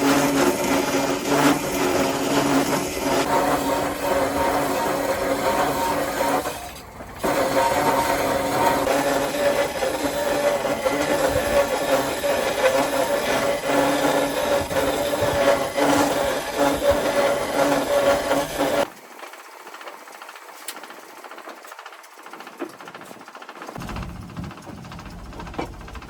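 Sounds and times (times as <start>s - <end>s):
power tool motor running: 0.0s - 18.9s
rough scraping grinding: 0.0s - 18.9s.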